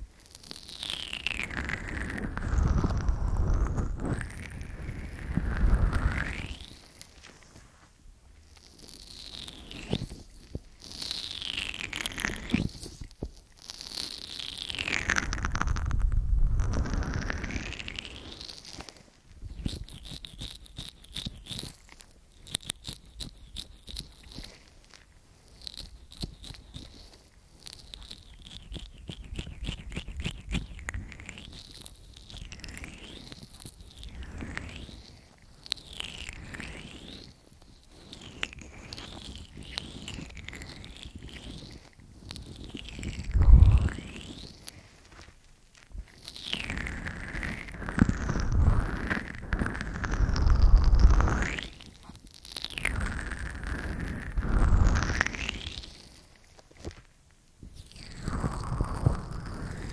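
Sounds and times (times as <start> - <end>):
small wet clicks: 0.1 - 59.9
oiled hands rubbing microphone: 1.3 - 11.0, 14.8 - 21.7, 38.0 - 46.2, 46.8 - 52.2, 52.9 - 59.9.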